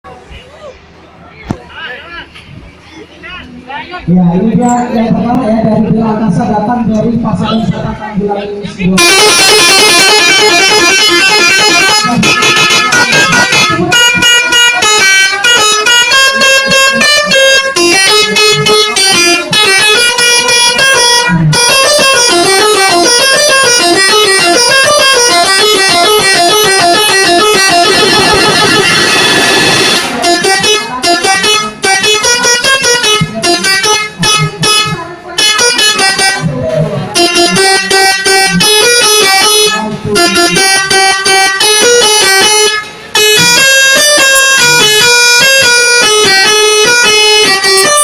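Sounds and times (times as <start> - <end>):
musical bus air horn: 9.0 - 48.0.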